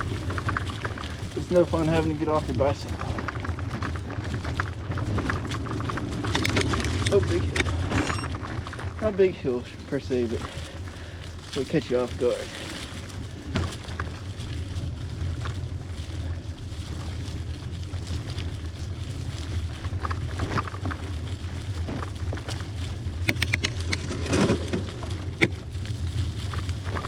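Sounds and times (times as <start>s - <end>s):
bike knocks and rattles: 0.0s - 10.6s, 13.4s - 14.8s, 19.5s - 27.0s
bicycle tyres on dirt trail: 0.0s - 27.0s
wind rumble on microphone: 0.0s - 27.0s.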